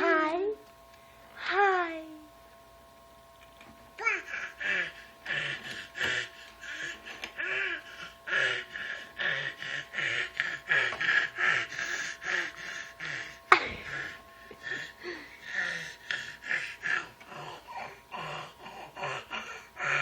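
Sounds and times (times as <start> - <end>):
toddler breathy vocal noises: 4.0 - 20.0.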